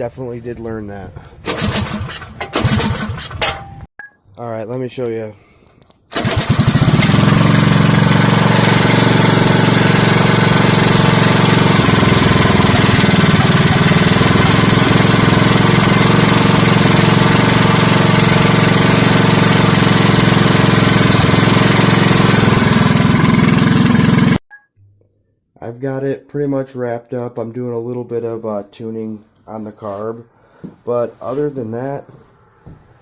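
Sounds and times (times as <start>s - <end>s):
small engine idling: 1.4s - 3.6s, 6.1s - 24.4s.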